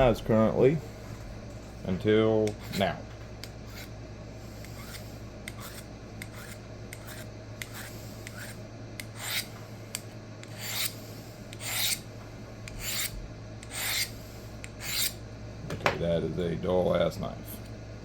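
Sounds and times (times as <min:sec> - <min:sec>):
low steady hum: 0:00.0 - 0:18.0
knife edge rasping on hard surface: 0:03.7 - 0:03.9, 0:04.6 - 0:09.5, 0:10.4 - 0:12.0, 0:12.7 - 0:15.2.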